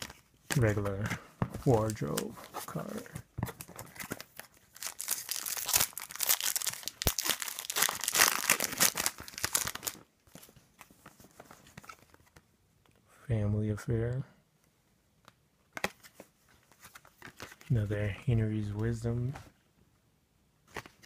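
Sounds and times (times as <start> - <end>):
wrapper being torn and crinkled: 3.9 - 10.0.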